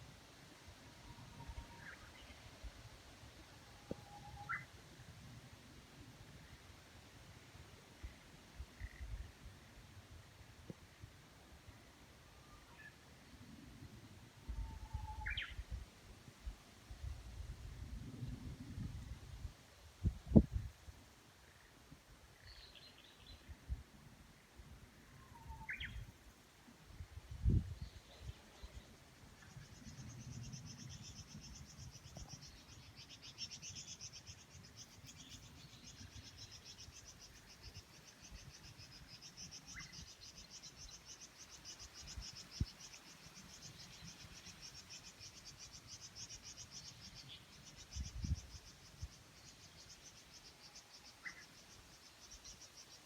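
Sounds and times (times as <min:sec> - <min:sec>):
wind on microphone: 0:16.9 - 0:20.8, 0:27.0 - 0:28.4.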